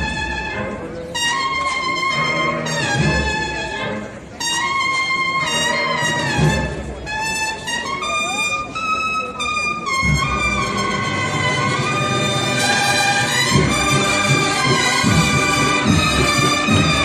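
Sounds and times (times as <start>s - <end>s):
brass band playing a march: 0.0s - 17.0s
trumpets holding long notes: 0.0s - 17.0s
deep drum beats: 12.6s - 17.0s.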